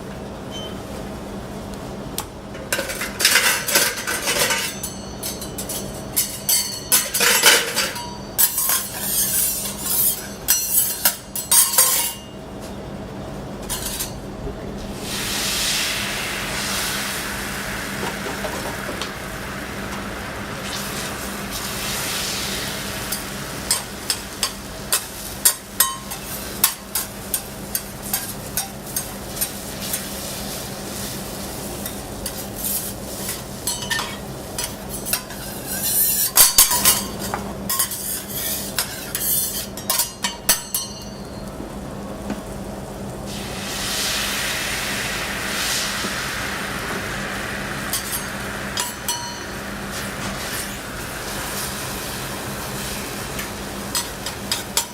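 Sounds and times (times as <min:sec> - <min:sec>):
egg batter sizzling in a pan: 0:14.9 - 0:35.9, 0:43.2 - 0:54.9.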